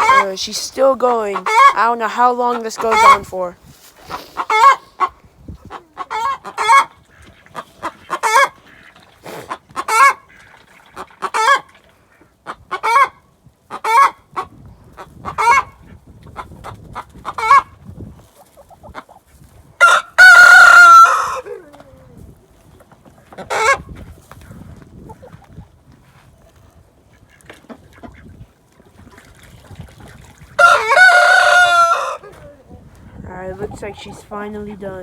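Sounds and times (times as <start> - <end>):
hen cackling loudly: 0.0 - 0.5, 1.1 - 1.9, 2.5 - 3.3, 4.0 - 8.9, 12.5 - 14.5, 15.2 - 15.7, 19.8 - 22.0, 30.6 - 32.7.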